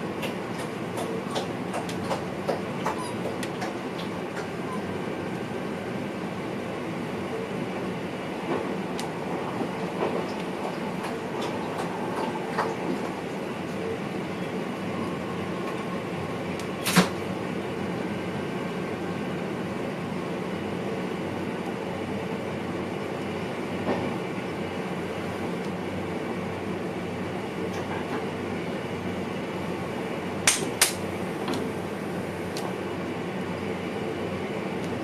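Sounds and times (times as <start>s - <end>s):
train cab running noise: 0.0s - 35.0s
sharp loud click: 30.5s - 31.0s.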